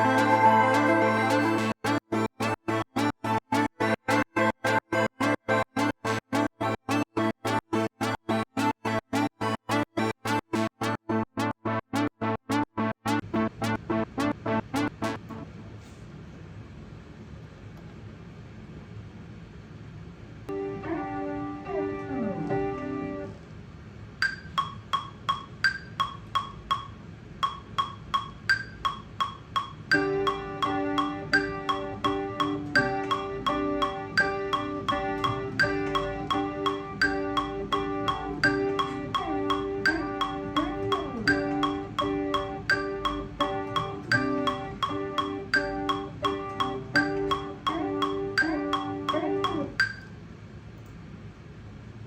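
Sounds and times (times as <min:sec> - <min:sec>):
held synth chord with falling glide: 0:00.0 - 0:11.2, 0:29.9 - 0:50.0
sustained chord layers with pitch bends: 0:00.0 - 0:15.5, 0:20.5 - 0:23.3, 0:24.2 - 0:50.0
sharp pitched percussive hits: 0:24.2 - 0:50.1.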